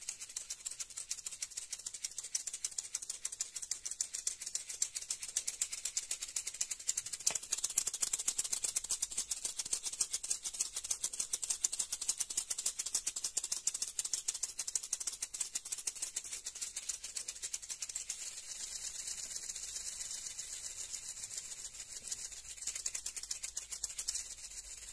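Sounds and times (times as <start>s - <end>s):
maracas shaken rhythmically: 0.0s - 24.9s.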